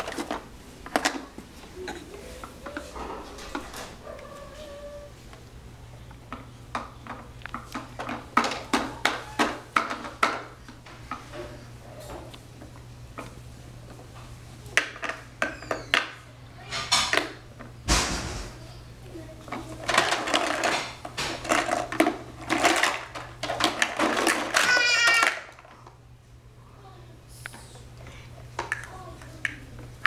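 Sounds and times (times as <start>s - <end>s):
hard objects clattering: 0.0s - 4.8s, 6.3s - 12.1s, 19.4s - 25.8s
loud thump: 17.9s - 18.6s.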